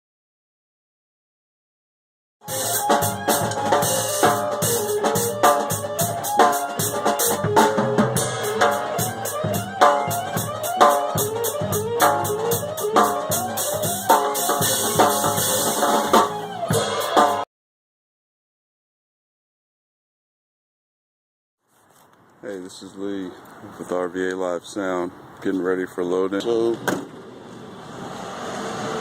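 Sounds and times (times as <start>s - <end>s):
drum kit steady beat: 2.4s - 17.4s
pitched instrumental parts: 2.4s - 17.4s.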